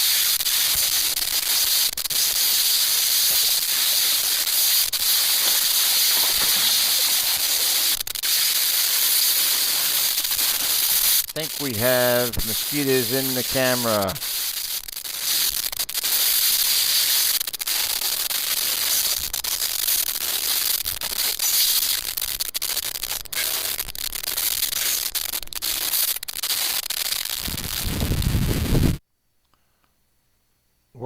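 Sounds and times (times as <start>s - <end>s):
small crackles and clicks: 0.0s - 11.4s, 13.6s - 28.0s
steady hiss: 0.0s - 20.7s.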